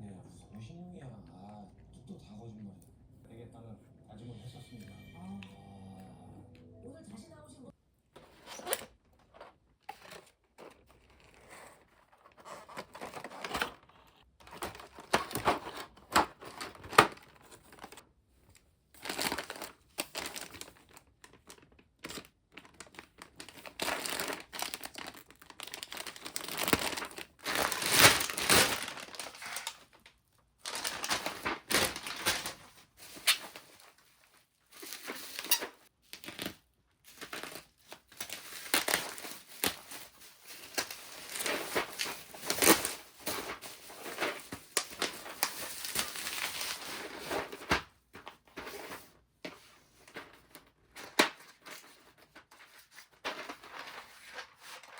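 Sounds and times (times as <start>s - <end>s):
packaging crinkling and rustling: 8.2s - 54.9s.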